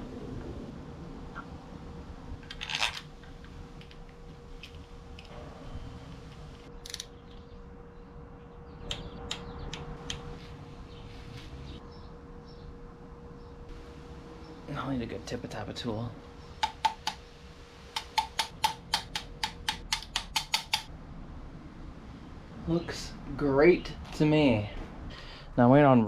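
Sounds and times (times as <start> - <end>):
faint steady hum: 0.0 - 26.0
metal clicks and taps: 16.6 - 17.2, 18.0 - 20.9.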